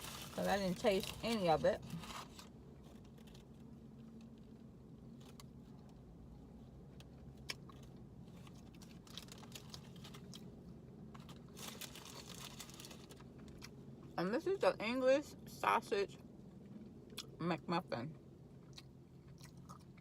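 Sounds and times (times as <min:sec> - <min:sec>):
low steady hum: 0:00.0 - 0:20.0
wrapper crinkling and clicks: 0:07.7 - 0:10.4, 0:11.2 - 0:13.3.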